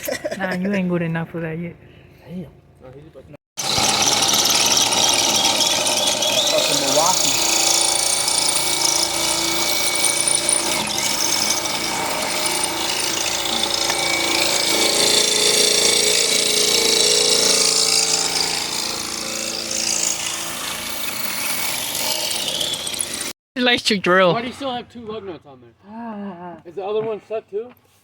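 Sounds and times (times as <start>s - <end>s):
power drill boring into steel: 3.6s - 23.4s.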